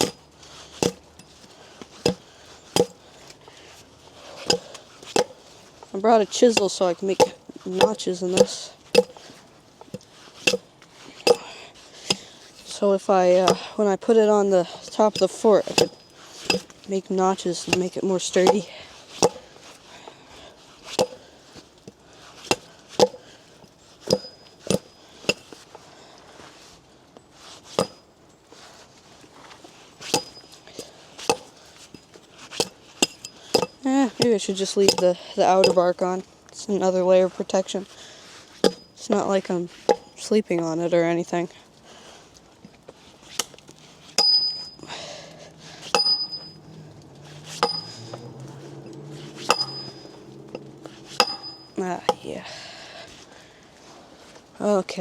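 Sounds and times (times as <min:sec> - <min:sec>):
steel tool striking log: 0:00.0 - 0:00.2, 0:00.8 - 0:01.3, 0:02.0 - 0:03.0, 0:04.4 - 0:05.4, 0:06.4 - 0:09.3, 0:09.9 - 0:12.4, 0:13.4 - 0:13.8, 0:14.8 - 0:16.8, 0:17.6 - 0:19.5, 0:20.9 - 0:21.3, 0:22.4 - 0:23.3, 0:24.0 - 0:25.6, 0:27.8 - 0:28.0, 0:30.0 - 0:35.9, 0:38.6 - 0:39.0, 0:39.8 - 0:40.2, 0:43.4 - 0:44.8, 0:45.8 - 0:46.7, 0:47.4 - 0:52.3
chisel striking wood: 0:06.6 - 0:09.2, 0:11.3 - 0:11.5, 0:15.2 - 0:16.7, 0:19.2 - 0:19.4, 0:27.8 - 0:28.0, 0:38.6 - 0:38.8, 0:45.9 - 0:46.4, 0:47.5 - 0:48.3, 0:49.3 - 0:51.6
high metallic ring: 0:15.2 - 0:16.7, 0:24.1 - 0:25.4, 0:30.2 - 0:30.7, 0:33.0 - 0:33.8, 0:38.6 - 0:39.0, 0:44.2 - 0:44.9, 0:45.9 - 0:46.9, 0:47.5 - 0:51.8.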